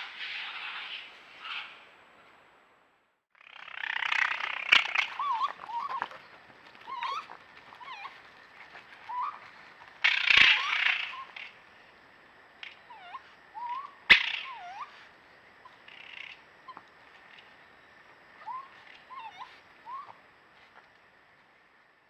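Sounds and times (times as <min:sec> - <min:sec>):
animal wavering calls: 0:03.5 - 0:11.6, 0:12.6 - 0:17.6, 0:18.3 - 0:20.2
wild animals screeching: 0:10.0 - 0:11.4.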